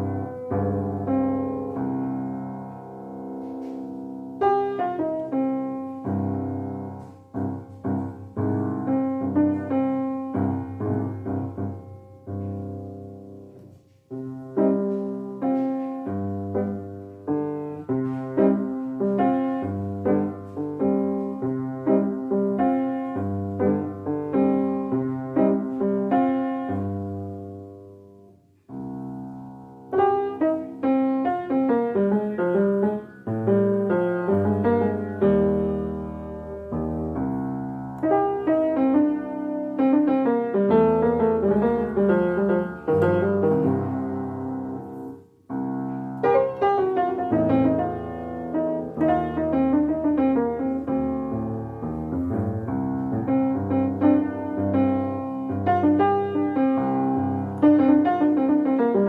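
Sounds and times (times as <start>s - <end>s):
solo piano music: 0.0s - 59.0s.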